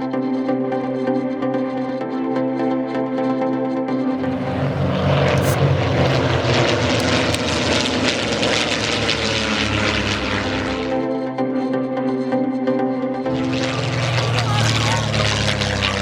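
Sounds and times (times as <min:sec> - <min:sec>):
propeller aircraft flying past: 0:04.2 - 0:11.2, 0:13.2 - 0:16.0.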